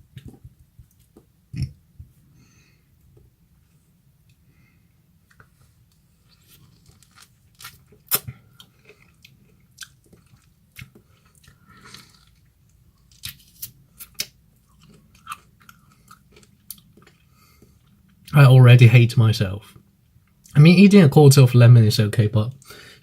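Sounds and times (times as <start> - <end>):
person chewing lemon crunching: 6.2 - 18.3.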